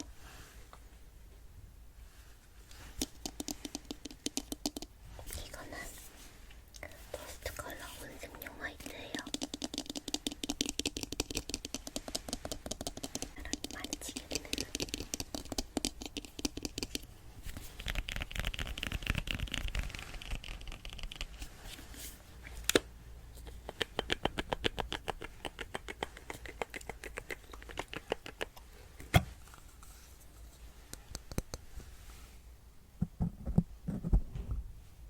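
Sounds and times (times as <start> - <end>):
scratchy brushing strokes: 2.1 - 22.3.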